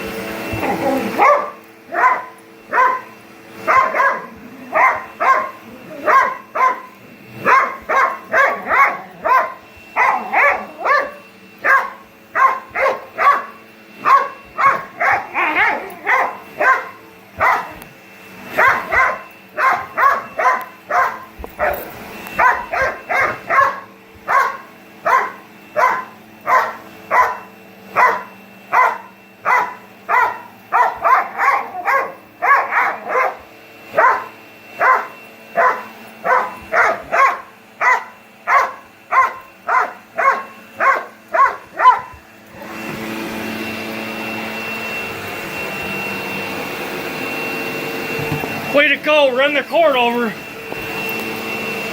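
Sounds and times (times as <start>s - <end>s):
vacuum cleaner humming: 0.0s - 51.9s
dog barking: 0.6s - 17.9s, 18.5s - 42.2s.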